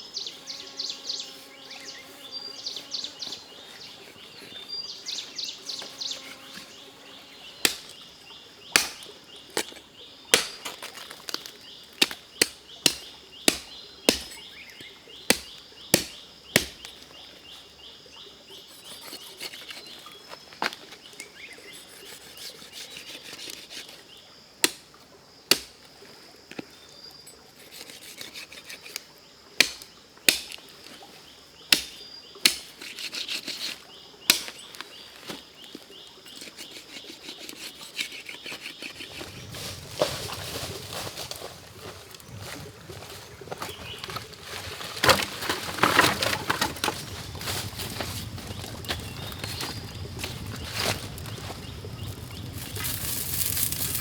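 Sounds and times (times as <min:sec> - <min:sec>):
insects trilling: 0:00.0 - 0:54.0
blade chopping wood: 0:07.6 - 0:08.0, 0:08.7 - 0:14.5, 0:15.3 - 0:17.0, 0:24.6 - 0:24.9, 0:25.5 - 0:25.8, 0:29.6 - 0:30.6, 0:31.7 - 0:33.6, 0:34.3 - 0:34.6, 0:44.9 - 0:50.4.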